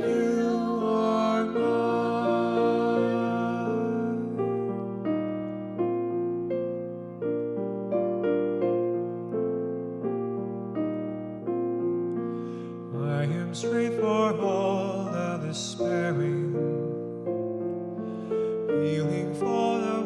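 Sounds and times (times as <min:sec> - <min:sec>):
person singing: 0:00.0 - 0:05.1, 0:12.9 - 0:17.2, 0:18.5 - 0:20.0
electric piano chords: 0:00.0 - 0:20.0.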